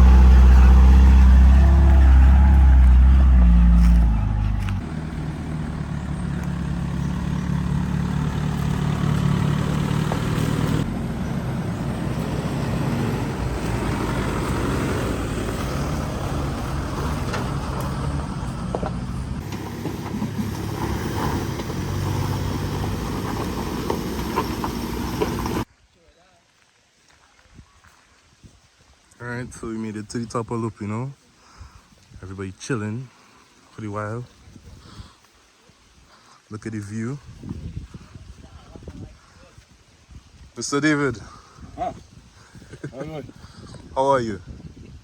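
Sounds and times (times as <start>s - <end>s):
truck engine running: 0.0s - 25.7s.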